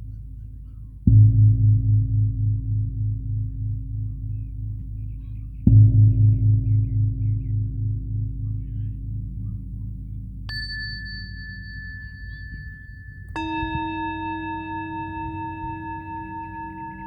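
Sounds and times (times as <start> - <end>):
low pulsing bowl tone: 0.0 - 17.0
deep singing bowl struck: 1.1 - 17.0
high singing bowl struck: 1.1 - 17.0.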